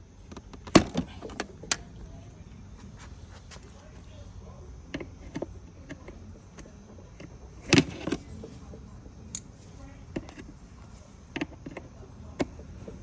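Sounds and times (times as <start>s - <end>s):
clicks and knocks: 0.3s - 1.9s, 4.9s - 8.6s
hard parts clattering: 0.3s - 2.1s.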